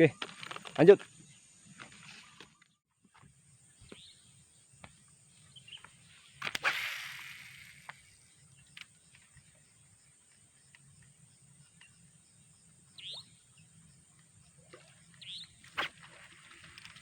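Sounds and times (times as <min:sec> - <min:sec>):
fishing line hissing out: 0:06.2 - 0:08.4
fishing reel clicks: 0:06.4 - 0:08.2
fishing rod cast swish: 0:06.4 - 0:08.2, 0:15.6 - 0:16.3.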